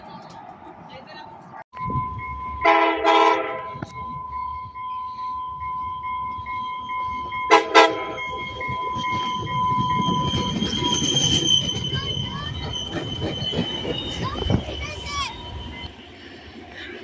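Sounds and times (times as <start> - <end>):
train rumble: 0.0 - 17.0
steady high tone: 1.8 - 16.2
train horn blasts: 2.0 - 3.9, 7.4 - 8.5.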